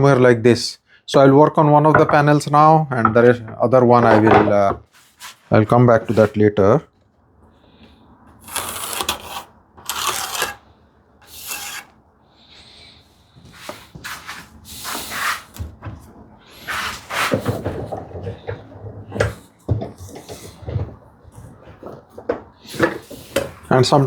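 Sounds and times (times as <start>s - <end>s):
hand plane rasping on wood: 8.5s - 10.6s, 11.2s - 11.9s.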